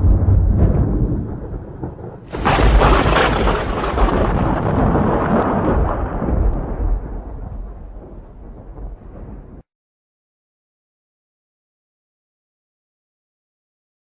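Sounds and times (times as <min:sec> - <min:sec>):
thunder crack and rumble: 0:00.0 - 0:09.6.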